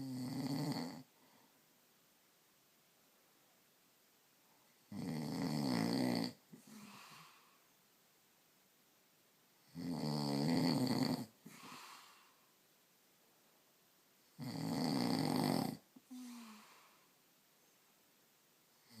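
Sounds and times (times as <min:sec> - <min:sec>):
man snoring: 0:00.0 - 0:01.1, 0:04.9 - 0:07.3, 0:09.6 - 0:11.8, 0:14.3 - 0:16.7.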